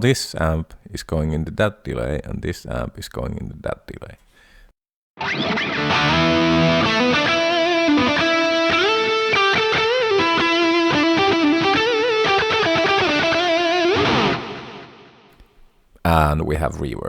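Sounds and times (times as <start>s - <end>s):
distorted electric guitar lead: 5.2s - 15.2s.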